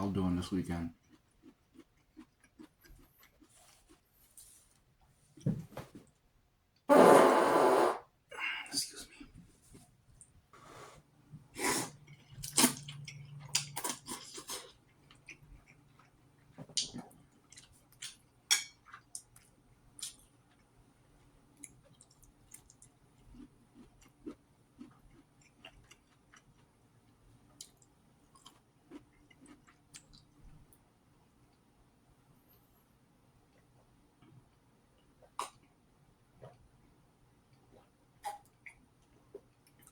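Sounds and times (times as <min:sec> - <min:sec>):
person chewing noodles: 0:00.9 - 0:04.1, 0:11.6 - 0:30.5.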